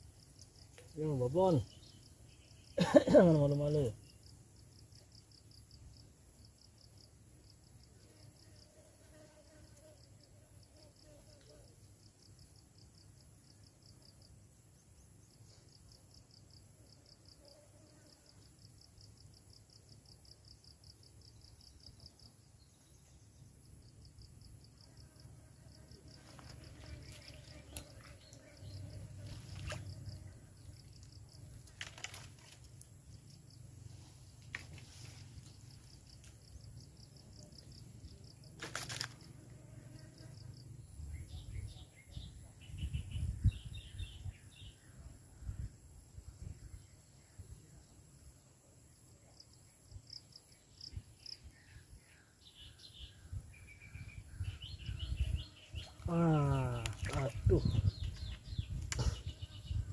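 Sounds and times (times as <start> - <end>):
insect chirping: 0.0 - 59.9
small birds chirping: 0.1 - 4.4, 40.0 - 45.2, 49.2 - 59.9.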